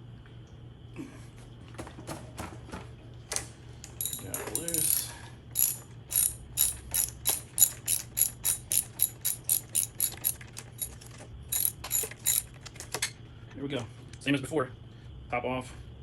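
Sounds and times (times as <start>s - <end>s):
socket ratchet clicking: 4.0s - 12.5s.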